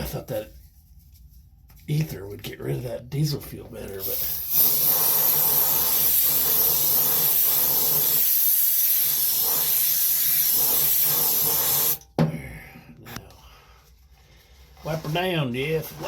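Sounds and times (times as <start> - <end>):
aerosol can spraying hiss: 4.0 - 12.0.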